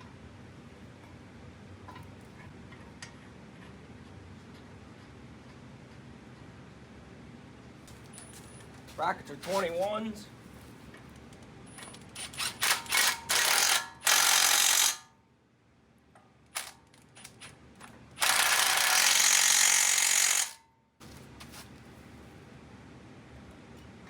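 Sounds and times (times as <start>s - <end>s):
impact wrench running in bursts: 12.2s - 15.0s, 18.2s - 20.6s.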